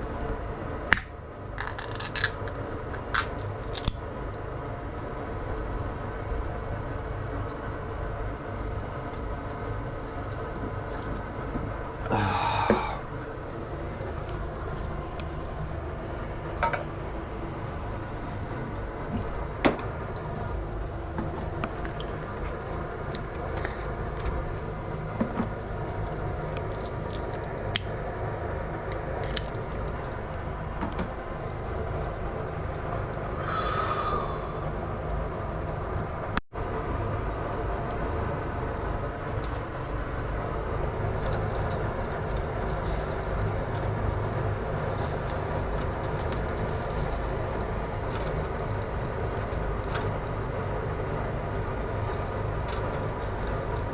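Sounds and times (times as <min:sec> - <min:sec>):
low rumbling hum: 0:00.0 - 0:53.9
meat sizzling in a pan: 0:41.4 - 0:53.9.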